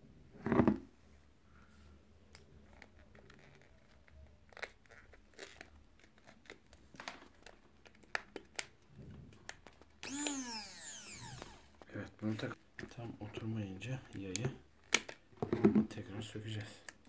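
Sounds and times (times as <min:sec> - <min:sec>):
falling pitched tone: 0:10.0 - 0:11.7
plastic parts clicking and knocking: 0:14.1 - 0:17.0.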